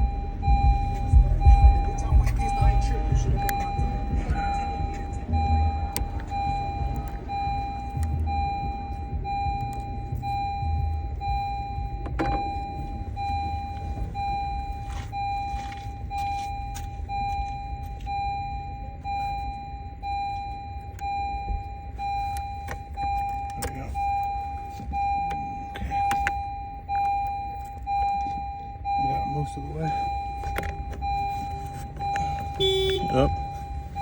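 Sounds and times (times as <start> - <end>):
car warning chime beeping: 0.0 - 34.0.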